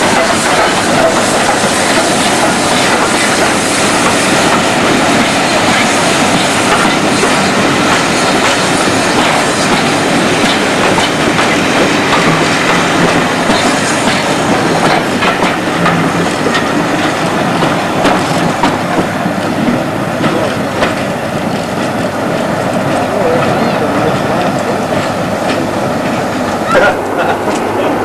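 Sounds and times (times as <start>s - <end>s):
train running gear rumble: 0.0s - 28.0s.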